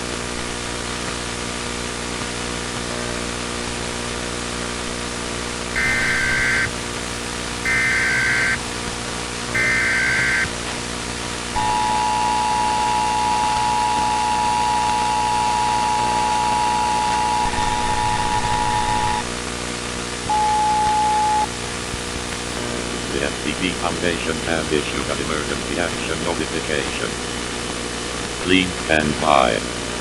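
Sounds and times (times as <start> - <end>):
tape hiss and hum: 0.0 - 30.0
two-tone attention signal: 5.7 - 7.0, 7.6 - 19.3, 20.3 - 24.2
warbling data bursts: 5.7 - 19.4, 21.4 - 26.8.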